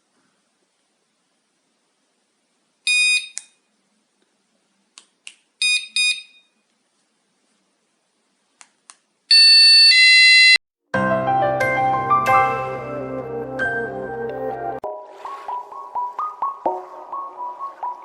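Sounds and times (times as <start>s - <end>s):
electronic alarm beeps: 2.9s - 3.5s, 5.6s - 6.6s, 9.3s - 10.6s
piercing alarm siren: 9.3s - 10.6s.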